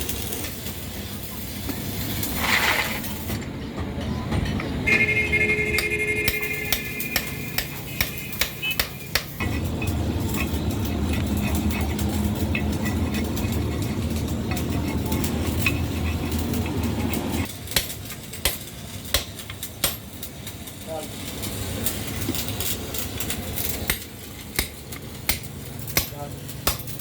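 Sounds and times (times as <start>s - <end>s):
metal tools clinking on metal: 6.2s - 27.0s.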